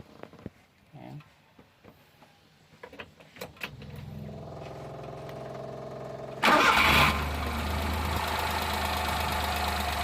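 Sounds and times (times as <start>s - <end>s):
car engine revving and idling: 3.7s - 10.0s
engine starter cranking: 6.4s - 7.3s.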